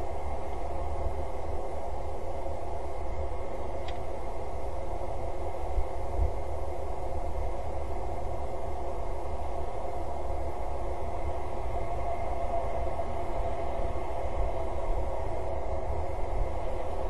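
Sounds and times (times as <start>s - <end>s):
background rumble and hiss: 0.0s - 17.0s
faint click: 3.8s - 4.1s.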